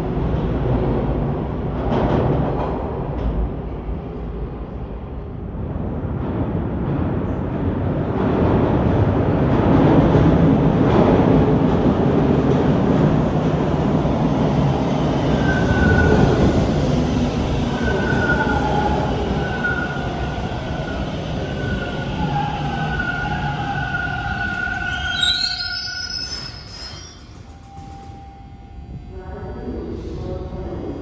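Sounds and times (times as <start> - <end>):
subway train rumbling: 0.0 - 31.0
high squealing tones: 17.4 - 28.9.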